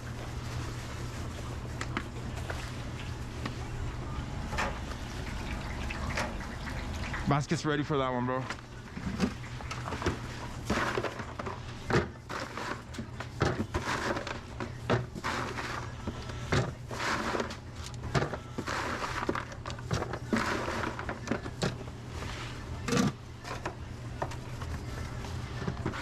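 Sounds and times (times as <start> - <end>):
low hum: 0.0 - 13.8
utensils and containers clanking: 0.7 - 26.0.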